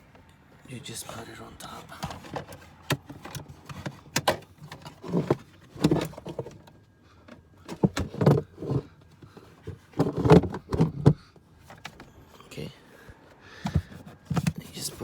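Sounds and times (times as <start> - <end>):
plastic scraping plastic: 1.8 - 6.8, 7.6 - 12.1, 13.6 - 15.0
plastic knocks and clatters: 2.0 - 12.1, 13.6 - 14.6.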